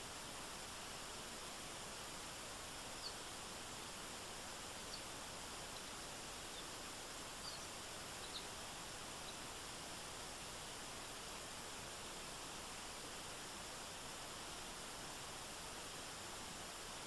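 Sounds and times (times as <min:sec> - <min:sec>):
small bird chirping: 0:02.9 - 0:03.3, 0:04.8 - 0:09.5.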